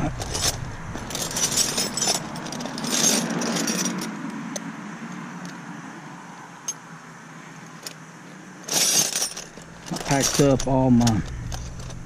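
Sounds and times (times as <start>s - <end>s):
metal sockets clinking: 0.1s - 4.7s, 8.7s - 12.0s.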